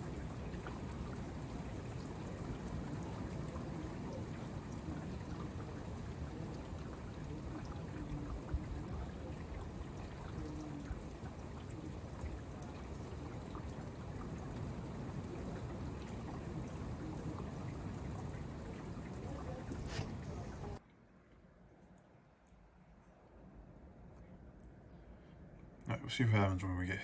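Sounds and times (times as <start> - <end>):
steady rain: 0.0 - 20.8
water drips ticking: 0.0 - 20.8.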